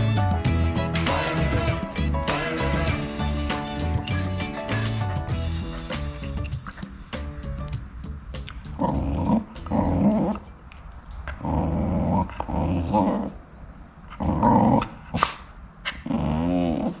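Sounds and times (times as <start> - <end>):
dog growling: 8.7 - 10.5, 11.2 - 13.5, 14.1 - 15.2, 15.9 - 17.0.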